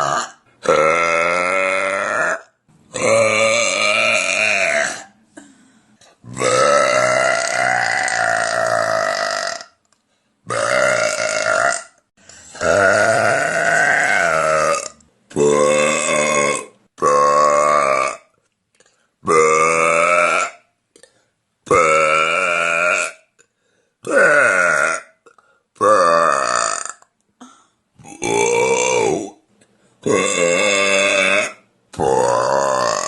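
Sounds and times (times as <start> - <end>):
woman burping loudly: 0.0 - 5.6, 6.2 - 9.8, 10.5 - 18.3, 19.2 - 20.6, 21.7 - 23.2, 24.1 - 29.4, 30.0 - 33.0.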